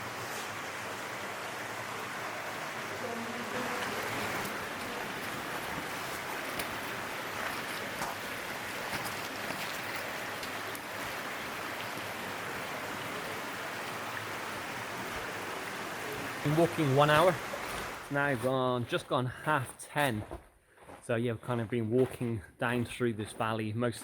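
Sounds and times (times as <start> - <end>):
stream running over rocks: 0.0 - 18.9.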